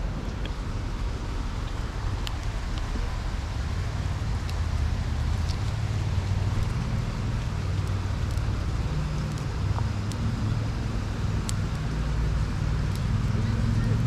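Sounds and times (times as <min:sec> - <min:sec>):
low outdoor rumble: 0:00.0 - 0:14.0
faint sharp clicks: 0:11.4 - 0:12.0, 0:12.8 - 0:13.2.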